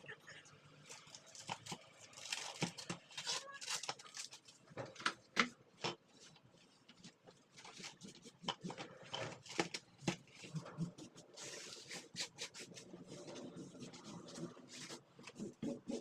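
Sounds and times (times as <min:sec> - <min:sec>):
brushing or wiping noise: 0:10.3 - 0:16.0.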